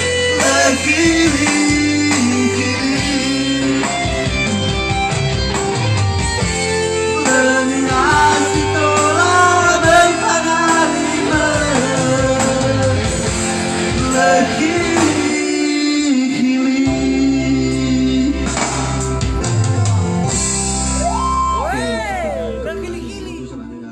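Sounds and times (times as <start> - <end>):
guitar accompaniment: 0.0 - 23.9
person singing long notes: 21.4 - 23.9.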